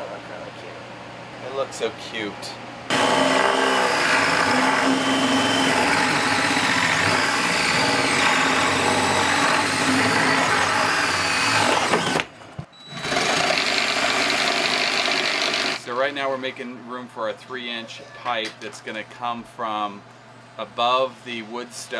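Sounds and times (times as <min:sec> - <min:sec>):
power tool running under load: 0:02.9 - 0:12.3, 0:12.9 - 0:15.8.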